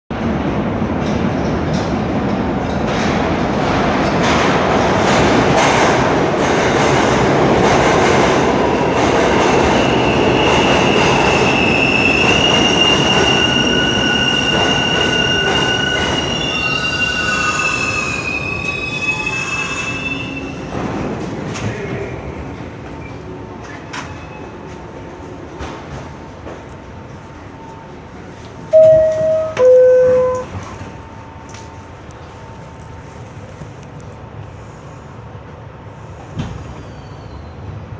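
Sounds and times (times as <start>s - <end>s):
subway wheels clicking over rail joints: 0.2s - 27.5s, 35.4s - 37.4s
high wheel squeal: 9.9s - 20.8s.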